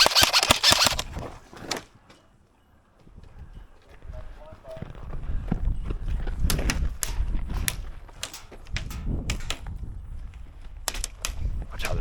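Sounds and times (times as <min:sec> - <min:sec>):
airsoft guns firing: 0:00.0 - 0:01.1.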